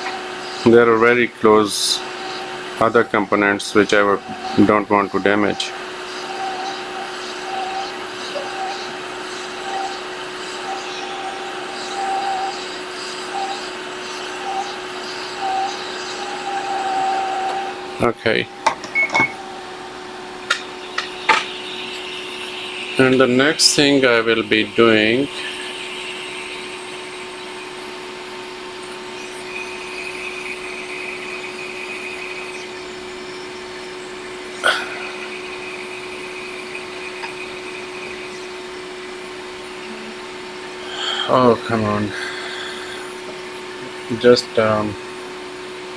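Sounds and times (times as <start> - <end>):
hissing airflow: 0.0 - 45.3
hot air station blowing: 0.0 - 45.9
steady hum: 0.0 - 45.9
high tone: 16.2 - 26.2, 39.5 - 41.6.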